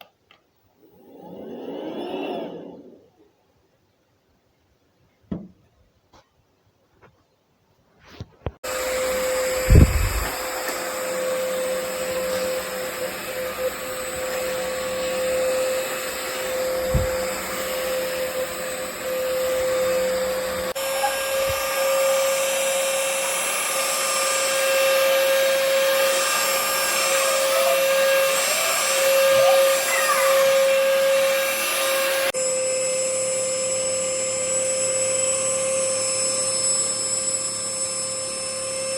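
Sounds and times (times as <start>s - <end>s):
vacuum cleaner whining: 0.8s - 3.0s, 8.6s - 38.9s
low thumps: 16.8s - 17.3s.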